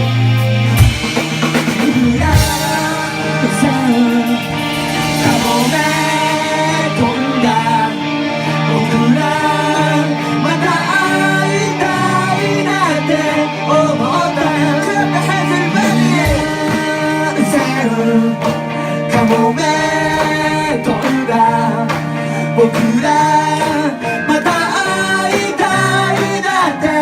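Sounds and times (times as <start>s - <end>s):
live rock band playing: 0.0s - 27.0s
person singing melody: 1.7s - 18.5s.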